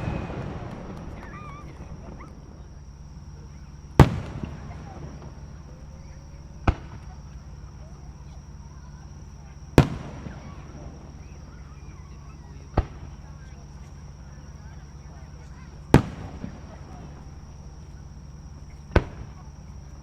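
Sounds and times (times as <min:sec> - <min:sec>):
rumbling echo: 0:00.0 - 0:07.0
fireworks bursting: 0:00.0 - 0:08.1, 0:09.5 - 0:11.6, 0:15.5 - 0:19.7.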